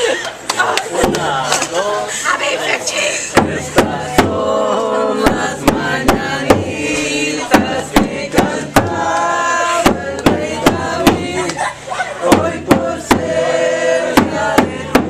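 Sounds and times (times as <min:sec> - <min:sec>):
group chanting a song: 0:00.5 - 0:15.0
sharp rhythmic hits: 0:03.3 - 0:15.0.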